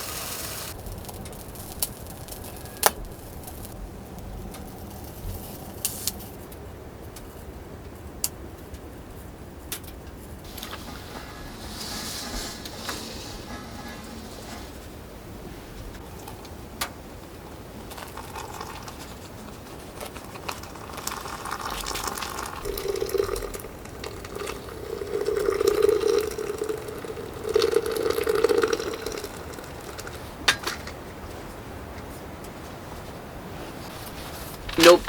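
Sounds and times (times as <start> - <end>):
liquid pouring into a container: 17.5 - 30.4.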